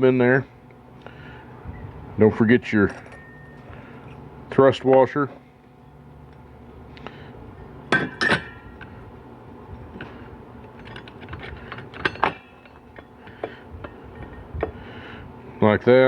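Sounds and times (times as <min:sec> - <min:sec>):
metal parts clinking: 0:10.7 - 0:13.4.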